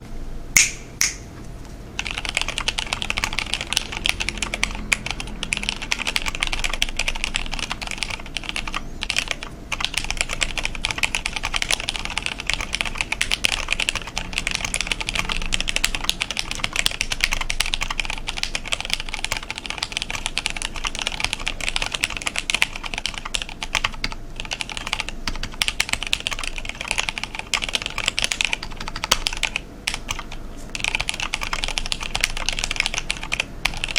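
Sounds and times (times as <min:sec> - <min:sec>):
mechanical keyboard typing: 0:02.0 - 0:33.9.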